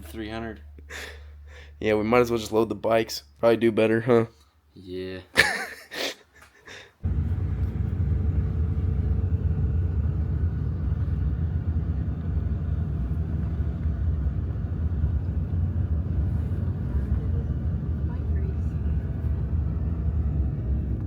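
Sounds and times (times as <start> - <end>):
low vehicle rumble: 7.0 - 21.0.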